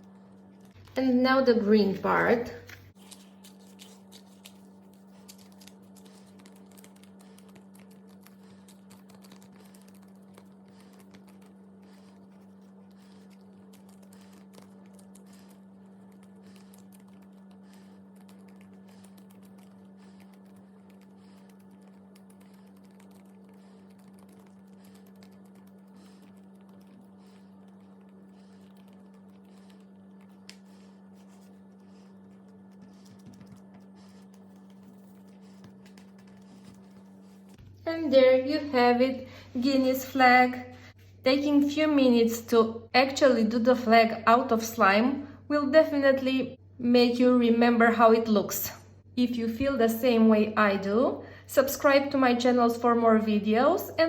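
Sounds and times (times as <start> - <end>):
steady low hum: 0.0 - 54.0
slime clicking and crackling: 2.9 - 37.6.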